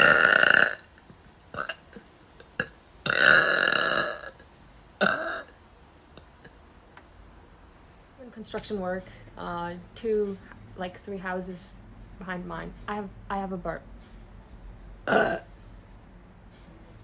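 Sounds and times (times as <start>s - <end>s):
person burping loudly: 0.0s - 0.9s, 2.6s - 4.4s, 5.0s - 5.5s, 15.0s - 15.5s.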